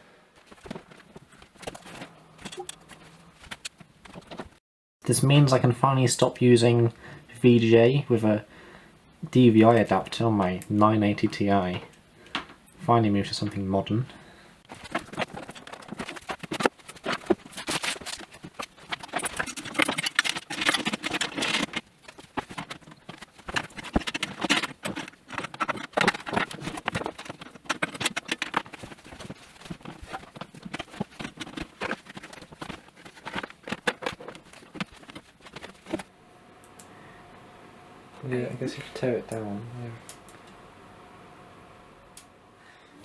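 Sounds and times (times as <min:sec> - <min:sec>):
plastic packaging clicks and rustling: 0:00.4 - 0:04.5, 0:14.7 - 0:36.1.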